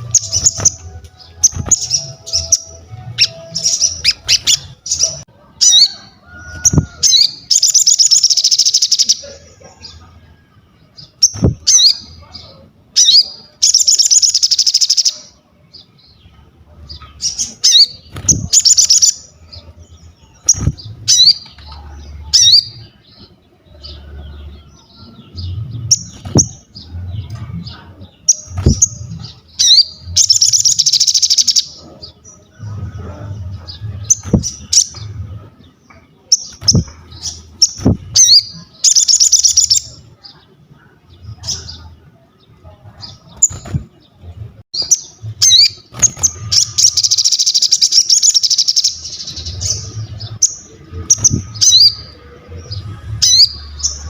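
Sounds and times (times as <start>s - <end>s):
bird chattering trills: 17.2s - 19.4s, 44.8s - 52.1s.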